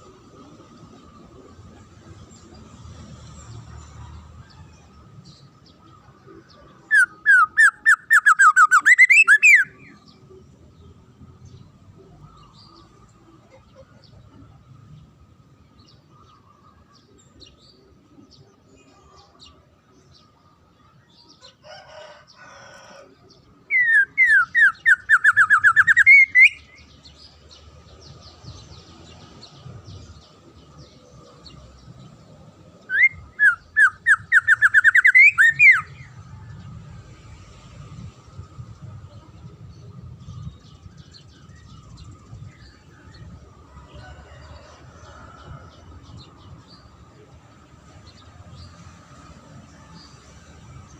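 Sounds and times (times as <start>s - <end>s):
songbird singing whistled phrases: 6.9s - 10.0s, 23.7s - 26.9s, 32.9s - 36.0s.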